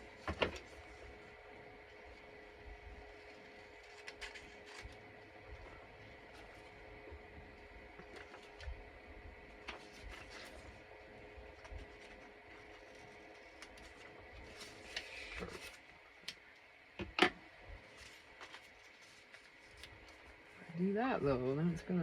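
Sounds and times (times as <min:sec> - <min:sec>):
faint steady hum: 0:00.0 - 0:22.0
paper rustling: 0:03.3 - 0:06.8, 0:08.0 - 0:08.8, 0:09.6 - 0:10.9, 0:11.5 - 0:15.9, 0:17.8 - 0:20.4.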